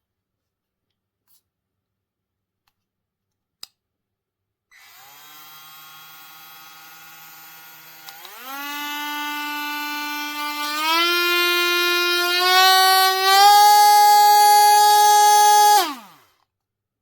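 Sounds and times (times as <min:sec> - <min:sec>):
rotary tool motor whine: 0:04.8 - 0:16.4.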